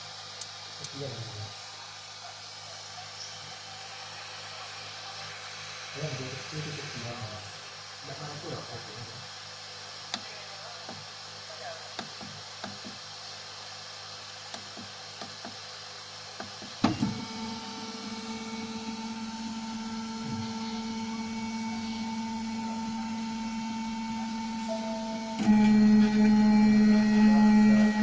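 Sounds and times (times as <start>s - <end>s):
printer motor whine: 16.4s - 28.0s.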